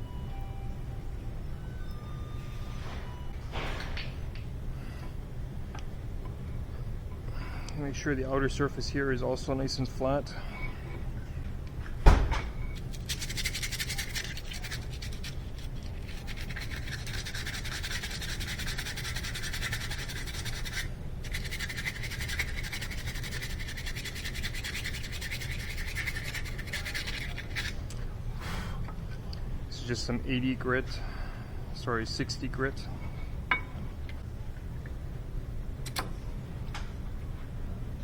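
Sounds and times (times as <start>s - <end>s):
sandpaper scratching metal: 12.8s - 27.7s.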